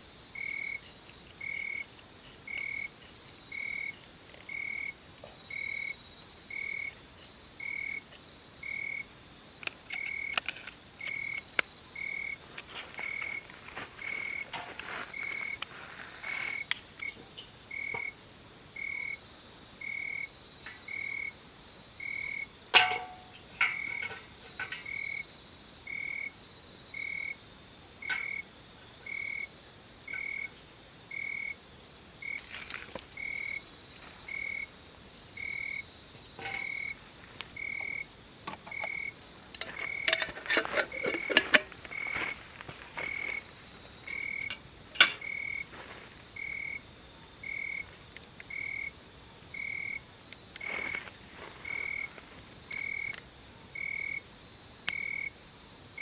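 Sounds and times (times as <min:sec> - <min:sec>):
frog calling: 0:08.6 - 0:21.4, 0:22.0 - 0:27.4, 0:28.0 - 0:29.5, 0:30.1 - 0:31.6, 0:32.2 - 0:33.6, 0:34.3 - 0:40.2
clicks and rustles: 0:09.6 - 0:18.0, 0:38.5 - 0:43.2.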